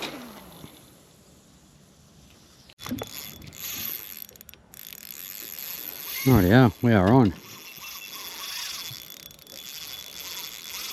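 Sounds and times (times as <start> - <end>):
fishing reel ratcheting: 2.8 - 10.9.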